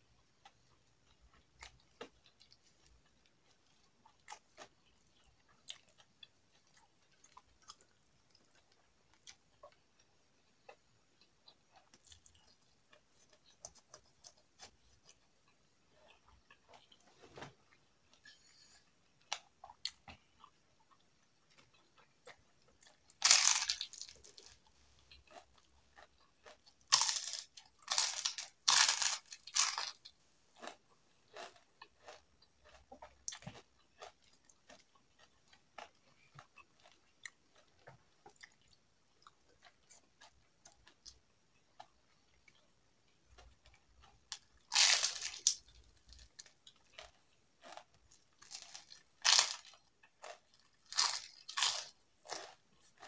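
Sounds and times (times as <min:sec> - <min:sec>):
crunchy bites of fried chicken: 0:18.2 - 0:41.2, 0:43.3 - 0:53.0.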